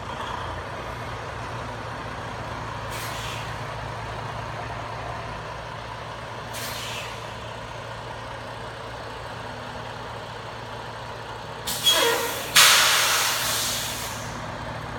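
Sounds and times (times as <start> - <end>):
diesel truck engine running: 0.0 - 14.9
air brakes hissing: 2.8 - 3.7, 6.4 - 7.5, 11.7 - 14.5
short squeal: 11.7 - 14.1.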